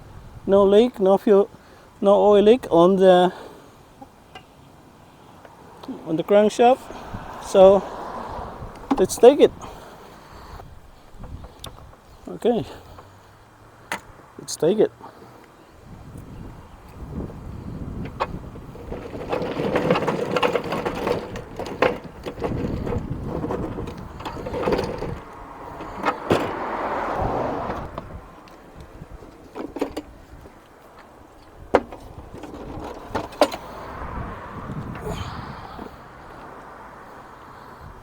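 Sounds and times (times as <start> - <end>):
push lawnmower rolling and clattering: 5.8 - 13.2, 16.9 - 34.1.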